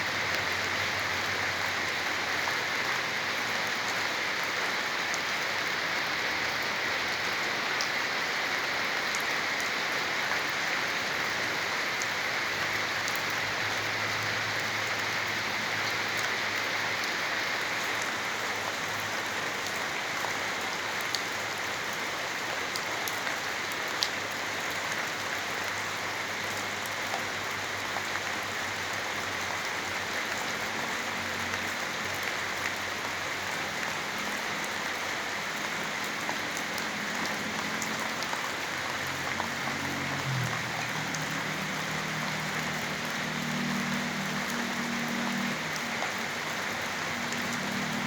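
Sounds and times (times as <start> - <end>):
steady rain falling: 0.0 - 48.0.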